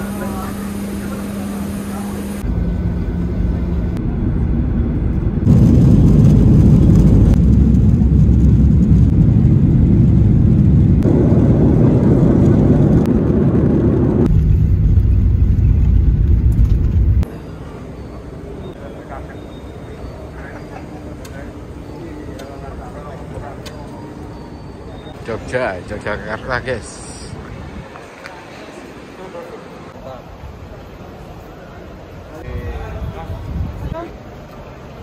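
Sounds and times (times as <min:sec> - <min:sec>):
vehicle rumble from inside: 0:02.4 - 0:17.3.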